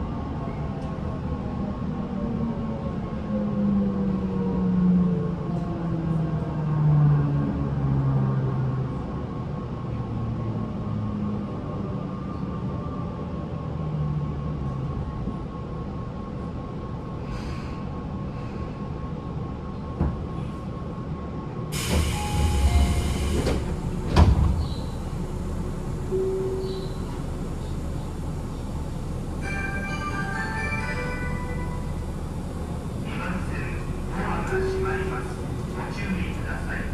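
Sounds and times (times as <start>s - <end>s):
air conditioning: 14.5s - 36.9s
electric train rumbling: 14.8s - 36.9s
loud hiss: 21.8s - 29.4s.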